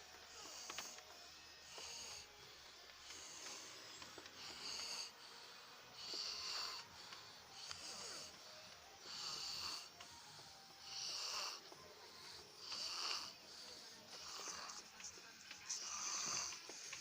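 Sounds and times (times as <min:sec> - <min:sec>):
person snoring: 0:00.3 - 0:15.0, 0:15.8 - 0:17.0.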